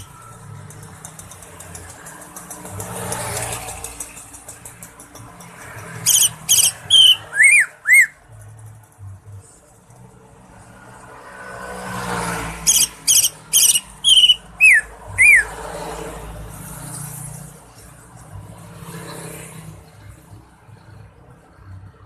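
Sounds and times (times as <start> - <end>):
vehicle passing: 0.0 - 22.0
bird whistling sharp notes: 6.1 - 8.2, 12.7 - 15.6.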